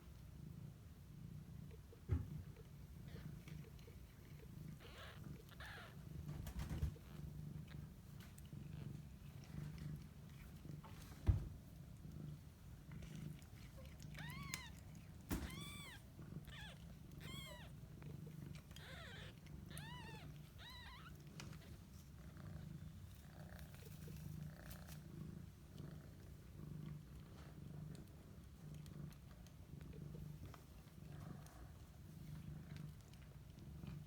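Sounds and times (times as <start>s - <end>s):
cat purring: 0.0s - 34.0s
kittens mewing: 3.1s - 6.1s, 14.0s - 17.8s, 18.6s - 21.2s.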